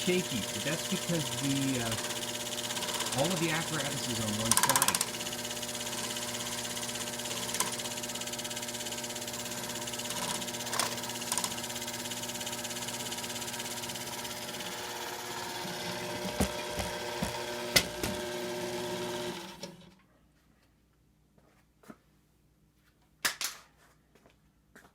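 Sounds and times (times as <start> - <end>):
electric motor running: 0.0 - 19.8.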